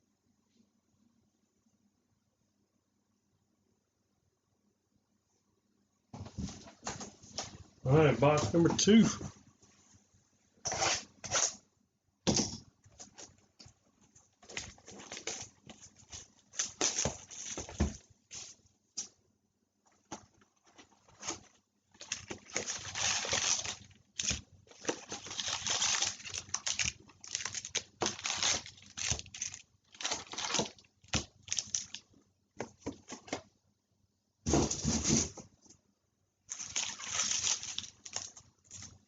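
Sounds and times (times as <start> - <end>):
foil card packs crinkling: 14.4 - 18.0, 20.0 - 33.4, 36.5 - 39.0.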